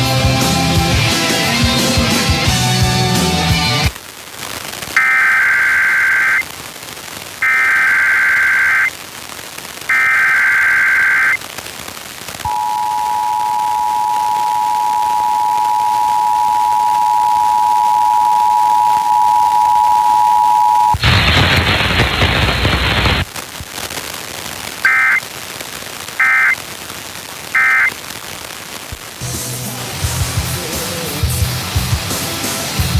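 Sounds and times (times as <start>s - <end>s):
radio hiss: 3.8s - 31.4s
buzzy data bursts: 5.0s - 6.5s, 7.4s - 9.0s, 9.9s - 11.4s, 24.8s - 25.2s, 26.1s - 26.6s, 27.5s - 28.0s
two-tone attention signal: 12.5s - 21.0s, 24.9s - 25.2s, 26.2s - 26.6s, 27.6s - 27.9s.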